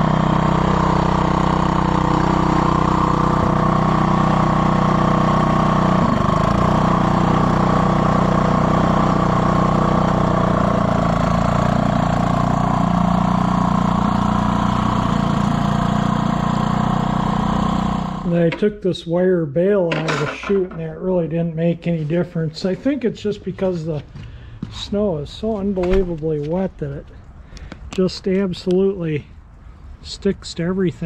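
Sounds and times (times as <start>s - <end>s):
snowblower engine running: 0.0s - 18.6s.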